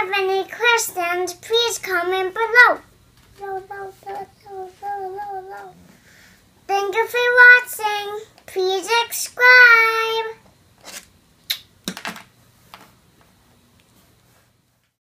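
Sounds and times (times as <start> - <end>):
child singing held notes: 0.0 - 5.8.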